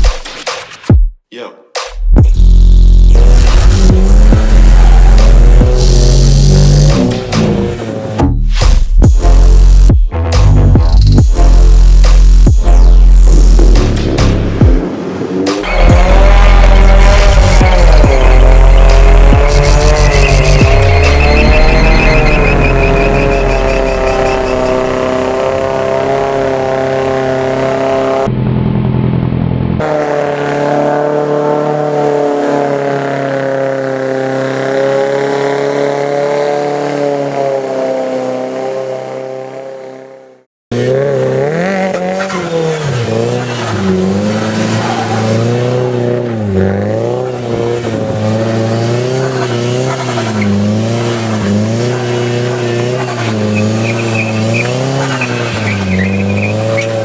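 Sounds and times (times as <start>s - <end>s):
turbo engine revving: 2.1s - 57.0s
tyre squeal: 15.6s - 25.7s, 41.7s - 57.0s.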